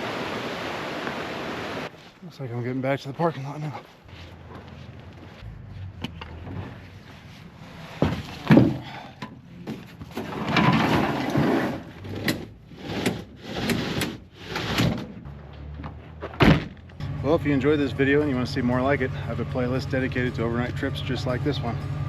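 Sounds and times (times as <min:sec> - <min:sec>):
loud thump: 0:16.3 - 0:16.8.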